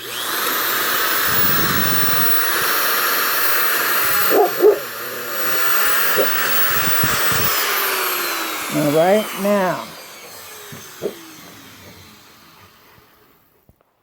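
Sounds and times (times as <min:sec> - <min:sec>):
electric drill boring into wood: 0:00.0 - 0:13.8.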